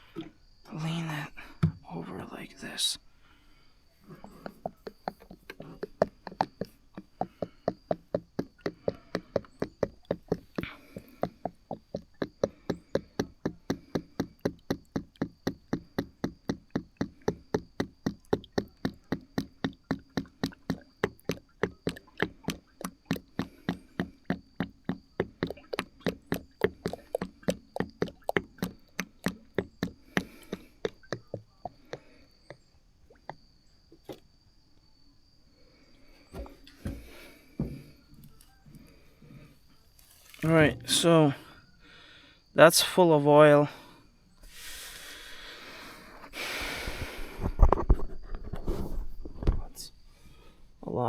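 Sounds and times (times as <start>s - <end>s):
oil glugging from jug: 4.0s - 33.4s.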